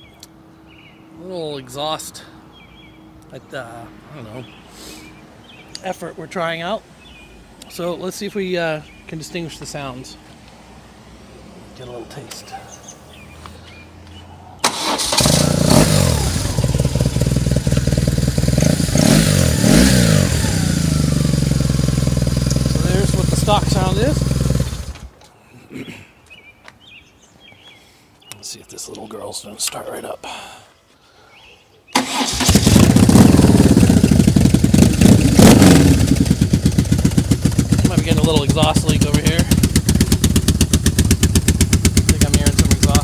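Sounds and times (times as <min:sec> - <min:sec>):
motorcycle starter cranking: 0:14.6 - 0:17.6, 0:32.0 - 0:37.8
motorcycle starting and idling: 0:14.6 - 0:25.1, 0:32.0 - 0:43.0.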